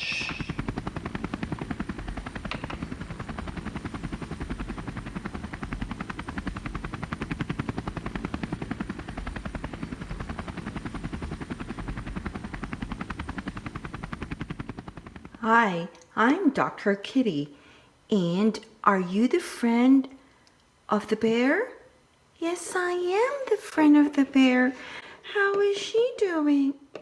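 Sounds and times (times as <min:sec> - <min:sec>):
helicopter rotor chopping: 0:00.0 - 0:15.8.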